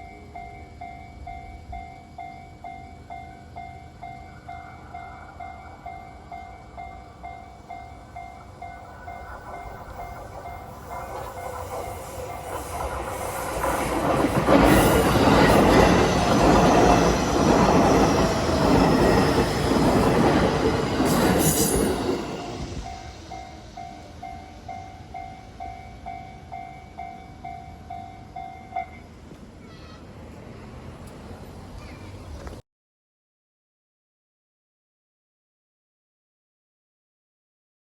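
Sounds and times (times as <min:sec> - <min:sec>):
level-crossing bell dinging: 0:00.0 - 0:12.4, 0:14.6 - 0:29.2
electric train passing: 0:00.0 - 0:32.4.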